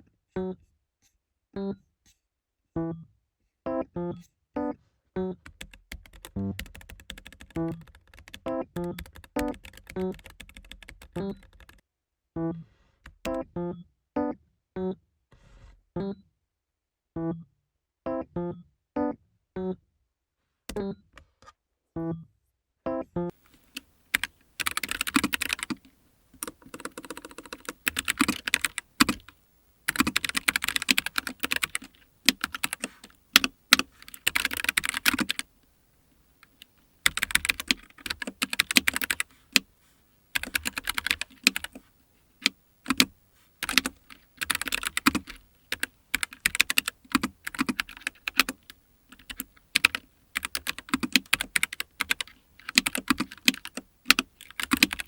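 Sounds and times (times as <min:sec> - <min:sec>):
mechanical keyboard typing: 0:05.5 - 0:11.8, 0:13.1 - 0:13.4, 0:23.3 - 0:39.7, 0:40.3 - 0:55.0.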